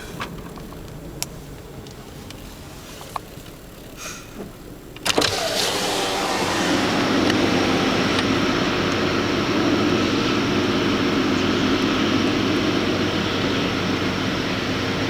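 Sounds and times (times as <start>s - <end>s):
pump truck engines droning: 0.0s - 15.0s.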